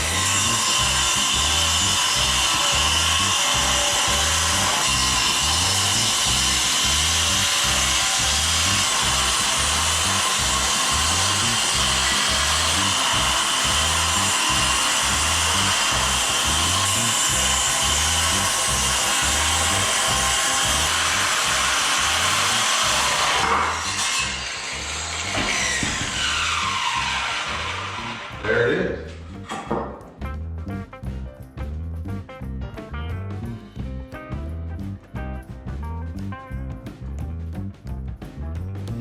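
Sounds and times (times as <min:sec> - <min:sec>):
power tool running: 0:00.0 - 0:29.7
background music with beat: 0:29.4 - 0:39.0.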